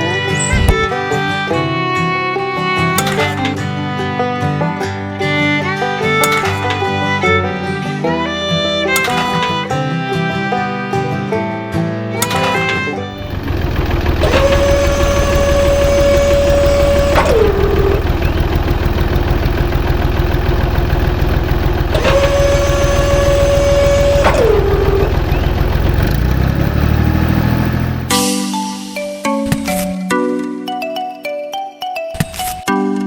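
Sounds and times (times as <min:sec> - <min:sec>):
tractor engine rumbling: 0:00.2 - 0:01.2, 0:08.9 - 0:09.6, 0:12.2 - 0:28.2.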